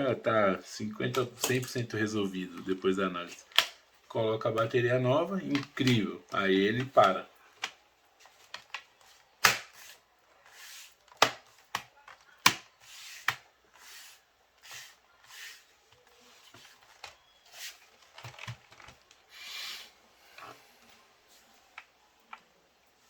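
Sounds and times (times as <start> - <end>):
laptop keys and case clicking: 18.0 - 19.2
soft hissing: 19.3 - 22.2.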